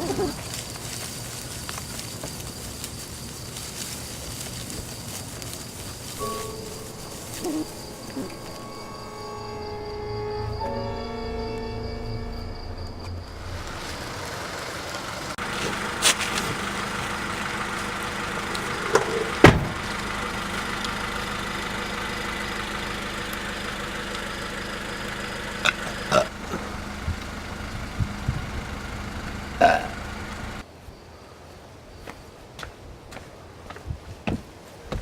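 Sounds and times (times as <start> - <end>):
steady engine-like drone: 5.1 - 30.6.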